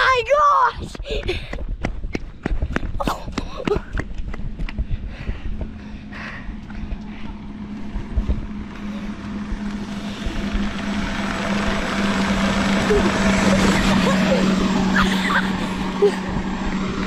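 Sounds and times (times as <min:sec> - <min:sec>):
electric motors whining: 0:05.6 - 0:17.0.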